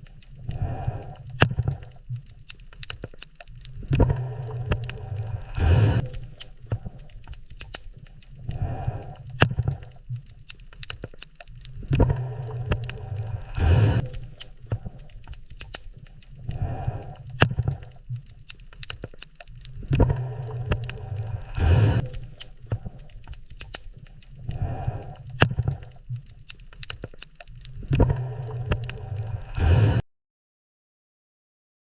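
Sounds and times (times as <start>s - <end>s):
underwater shrimp clicking: 0.0s - 30.0s
low steady hum: 3.3s - 10.7s, 11.3s - 26.7s, 27.4s - 30.0s
underwater rushing bursts: 4.0s - 6.4s, 11.9s - 14.4s, 19.9s - 22.4s
rush of noise: 20.9s - 22.0s, 29.2s - 30.0s.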